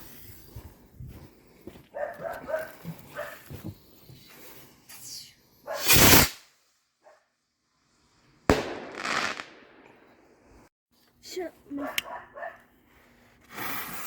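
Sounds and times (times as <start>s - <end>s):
skyrocket launch hiss: 5.8s - 6.4s
skyrocket bursting bang: 8.5s - 9.9s.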